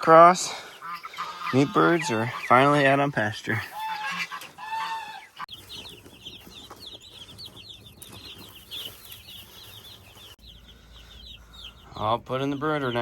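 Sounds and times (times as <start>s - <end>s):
chicks peeping: 0.0s - 13.0s.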